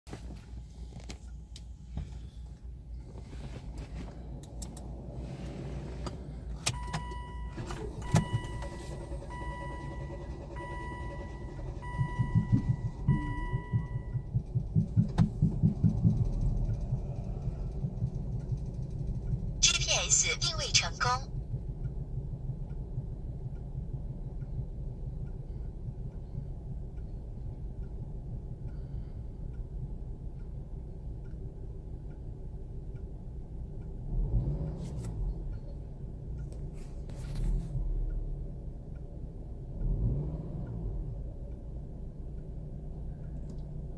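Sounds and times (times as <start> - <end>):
car engine low rumble: 0.1 - 43.9
car engine cranking: 2.2 - 43.9
car engine cranking on starter: 3.1 - 20.8
engine misfiring in uneven thumps: 6.1 - 19.6
faint regular ticking: 11.5 - 19.6, 21.3 - 34.8.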